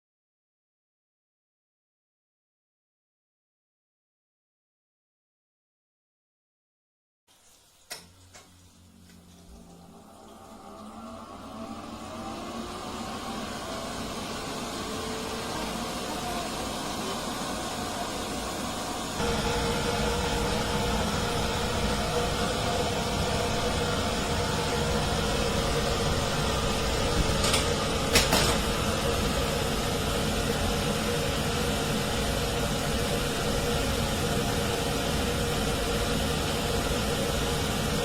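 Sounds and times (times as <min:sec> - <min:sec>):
duct fan rushing air: 0:08.6 - 0:38.0.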